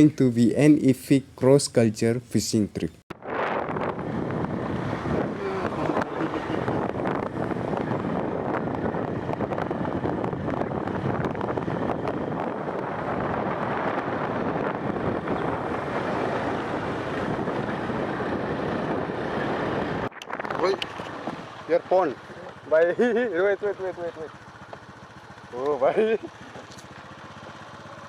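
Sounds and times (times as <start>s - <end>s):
wind on microphone: 3.1s - 22.4s
moving vehicle running noise: 3.1s - 28.0s.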